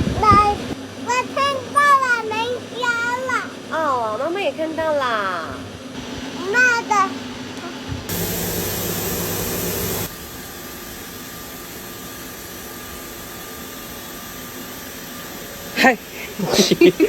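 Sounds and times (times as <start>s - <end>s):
motor humming: 6.0s - 17.0s
water spraying: 8.1s - 17.0s.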